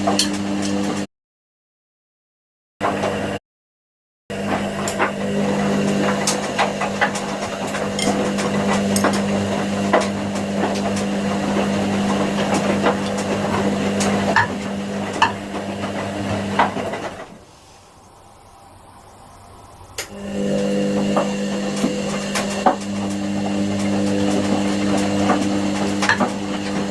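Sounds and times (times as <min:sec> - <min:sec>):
washing machine motor hum: 0:04.3 - 0:26.9
tumbling drum clicks and knocks: 0:04.6 - 0:17.3.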